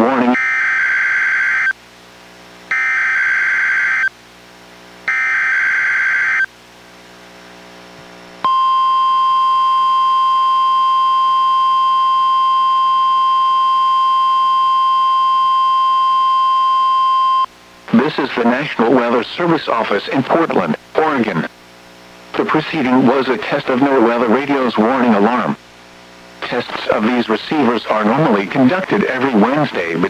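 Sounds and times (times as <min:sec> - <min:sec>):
steady warning alarm tone: 0:00.0 - 0:01.7, 0:02.7 - 0:04.1, 0:05.1 - 0:06.5, 0:08.5 - 0:17.5.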